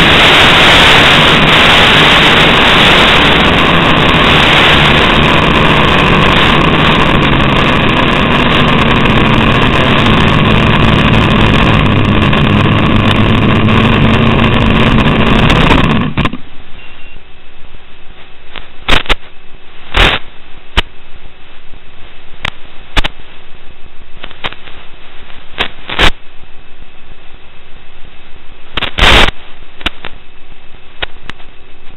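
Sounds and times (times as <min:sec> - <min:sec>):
loud steady noise rush: 0:00.0 - 0:31.9
low hum: 0:00.0 - 0:31.9
sharp clicks: 0:28.8 - 0:30.2.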